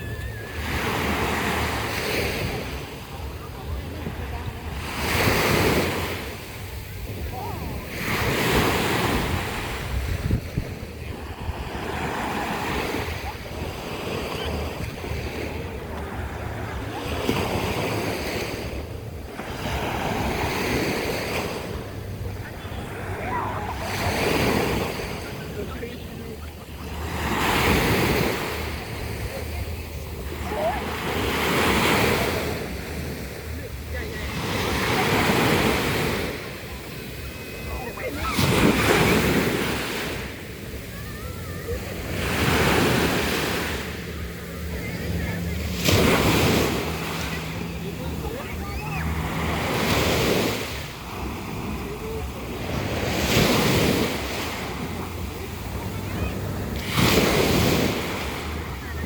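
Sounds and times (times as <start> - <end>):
sea waves washing in: 0.0 - 59.0
wind rumbling on microphone: 5.8 - 27.1.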